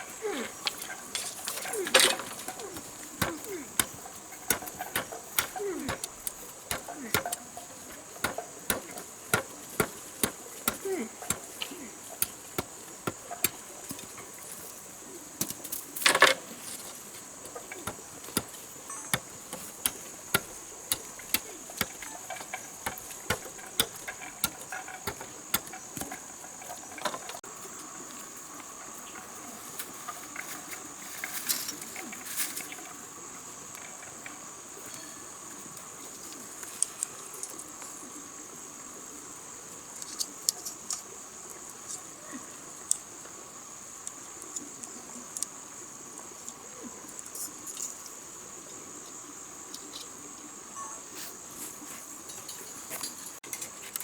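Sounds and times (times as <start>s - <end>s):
high-pitched insect chorus: 0.0s - 54.0s
lower insect tone: 0.0s - 54.0s
sharp clicks and knocks: 0.6s - 14.1s, 17.4s - 27.4s.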